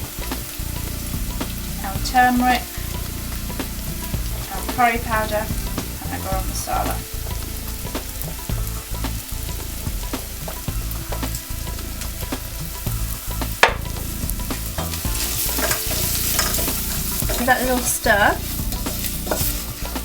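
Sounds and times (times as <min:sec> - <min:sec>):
food sizzling in oil: 0:00.0 - 0:20.0
sharp knock: 0:13.6 - 0:15.0
spoon stirring and scraping pot: 0:13.7 - 0:20.0.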